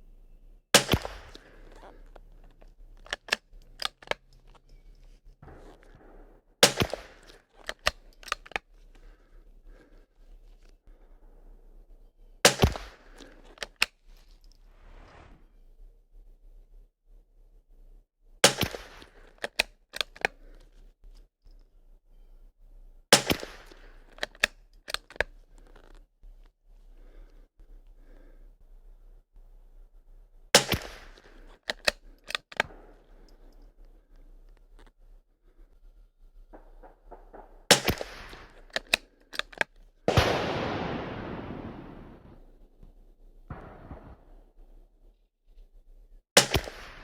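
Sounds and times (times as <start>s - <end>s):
gunshots: 0.8s - 1.7s, 5.4s - 7.4s, 12.5s - 13.3s, 23.1s - 23.9s, 30.6s - 31.3s, 36.6s - 38.8s, 40.1s - 42.5s, 43.5s - 44.6s, 46.4s - 47.0s
rifle shots: 0.8s - 1.7s, 5.4s - 8.5s, 12.5s - 13.3s, 18.4s - 19.1s, 23.1s - 23.9s, 30.6s - 31.5s, 36.6s - 39.0s, 40.1s - 42.5s, 43.5s - 44.6s, 46.4s - 47.0s
rifle bolt clicking: 0.8s - 4.6s, 6.6s - 8.6s, 18.4s - 20.5s, 23.2s - 25.8s, 30.6s - 33.4s, 37.7s - 41.0s.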